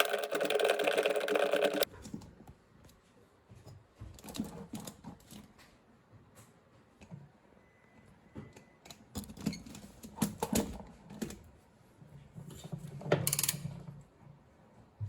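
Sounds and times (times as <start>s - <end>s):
rattling and clicking: 0.0s - 1.9s
metallic clicks and knocks of tools: 13.2s - 13.6s.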